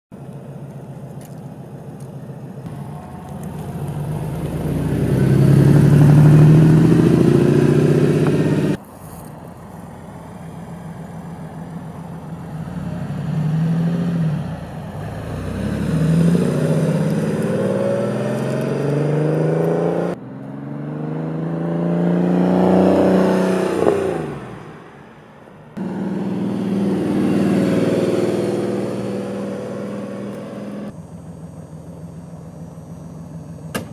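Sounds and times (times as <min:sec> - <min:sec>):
car engine revving hard: 0:04.2 - 0:08.8, 0:15.0 - 0:24.5, 0:25.8 - 0:30.9.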